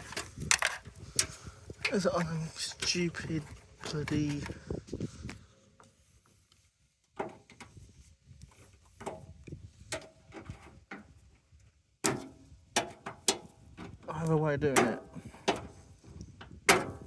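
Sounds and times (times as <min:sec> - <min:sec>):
clicks and knocks of machine parts: 0:00.0 - 0:04.6.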